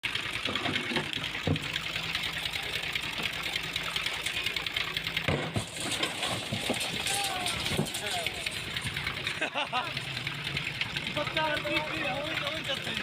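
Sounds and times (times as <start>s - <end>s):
construction machine engine: 0.0s - 13.0s
fast dense clatter: 0.0s - 13.0s.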